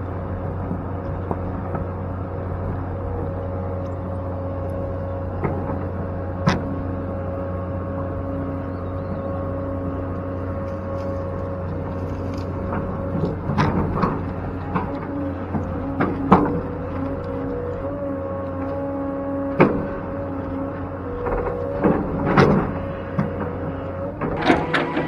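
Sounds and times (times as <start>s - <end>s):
excavator engine running: 0.0s - 25.0s
metal clanks and knocks: 12.3s - 17.9s, 21.1s - 25.0s.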